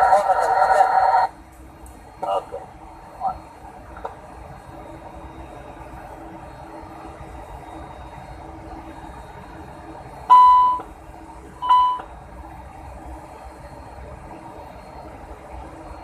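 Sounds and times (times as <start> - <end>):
steady mechanical hum: 0.0 - 16.0
short electronic beeps: 10.3 - 10.9, 11.6 - 12.1.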